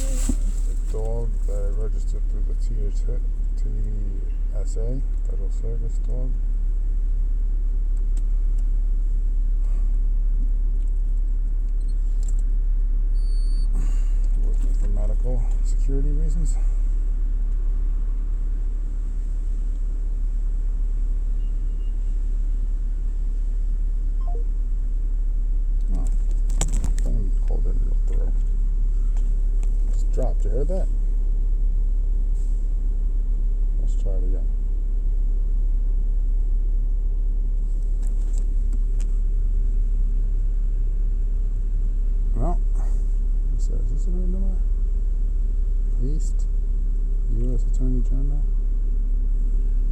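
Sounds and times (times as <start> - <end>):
steady low rumble: 0.0 - 49.9
faint short high beep: 24.2 - 24.6.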